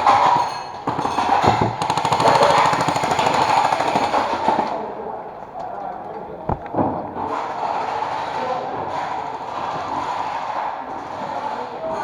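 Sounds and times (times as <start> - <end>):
airsoft gun firing full-auto: 1.8 - 4.7.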